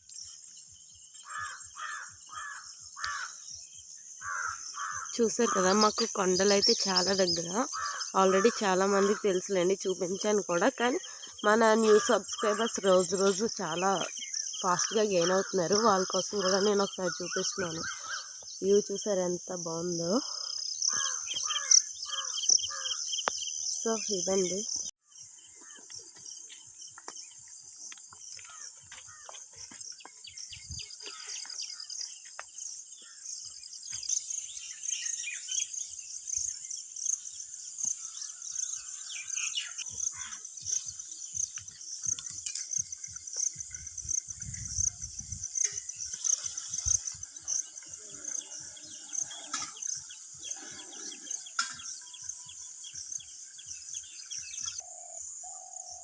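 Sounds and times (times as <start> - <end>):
crickets chirping: 0.0 - 56.0
bird chirps: 20.0 - 56.0.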